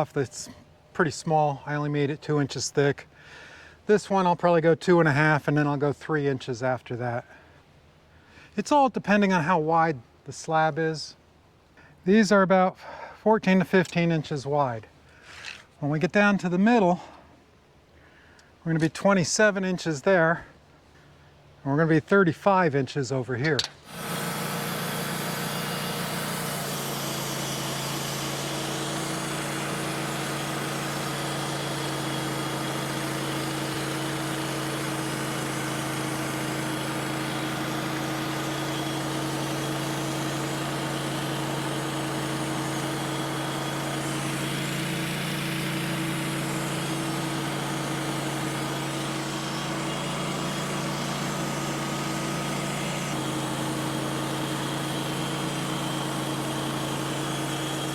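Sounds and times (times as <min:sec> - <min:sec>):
saw blade cutting log: 0:23.5 - 0:57.9
sawmill engine running: 0:23.8 - 0:57.9.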